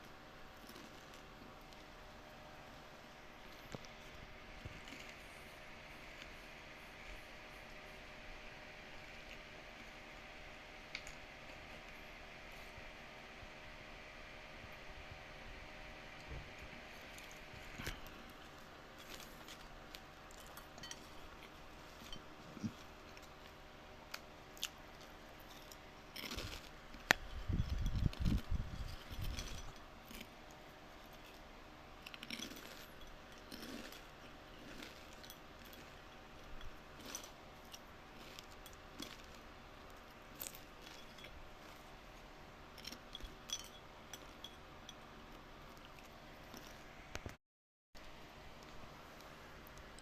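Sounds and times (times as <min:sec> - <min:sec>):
faint steady hum: 0:00.0 - 0:47.4, 0:48.0 - 0:50.0
watermelon crunching while chewed: 0:00.5 - 0:02.0, 0:03.4 - 0:07.4, 0:16.8 - 0:44.5, 0:45.1 - 0:47.2.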